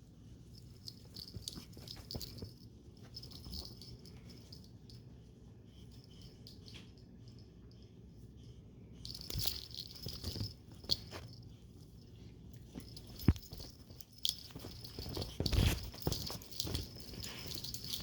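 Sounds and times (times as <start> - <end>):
monkeys scrambling and rustling: 12.9 - 18.0.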